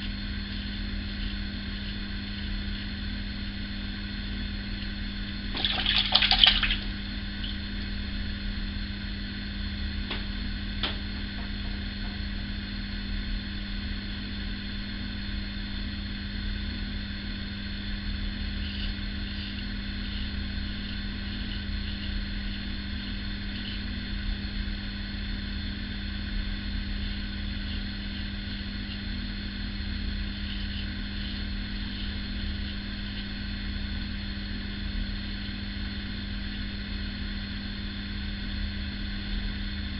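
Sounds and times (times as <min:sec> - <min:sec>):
razor scraping stubble: 0:00.0 - 0:03.2, 0:18.2 - 0:24.2, 0:26.7 - 0:33.4
low electrical hum: 0:00.0 - 0:39.9.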